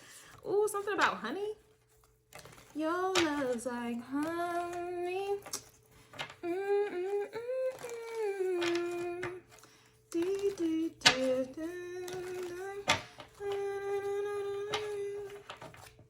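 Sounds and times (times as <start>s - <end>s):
woman humming a slow tune: 6.4s - 9.4s, 10.2s - 15.6s.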